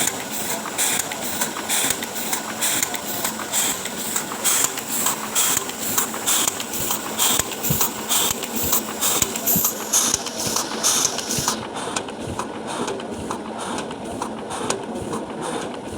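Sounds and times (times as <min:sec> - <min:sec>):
printing press hissing pulses: 0:00.0 - 0:11.6.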